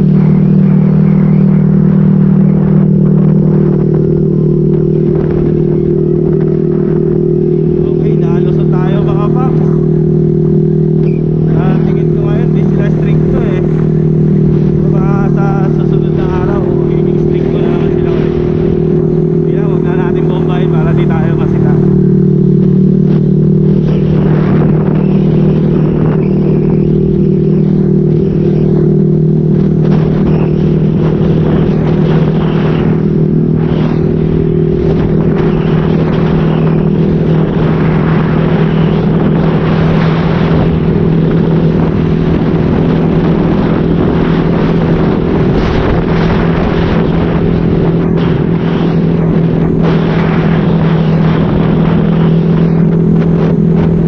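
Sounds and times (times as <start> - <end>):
motorcycle engine running steadily: 0.0 - 54.0
wind rushing noise: 0.0 - 54.0.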